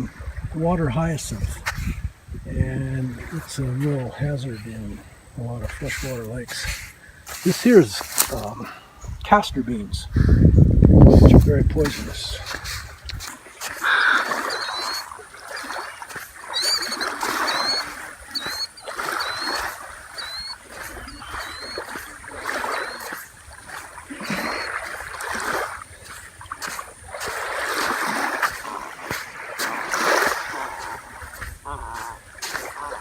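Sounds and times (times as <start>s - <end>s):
small waves washing ashore: 0.0s - 9.1s, 11.3s - 33.0s
bird chirping: 13.0s - 24.9s.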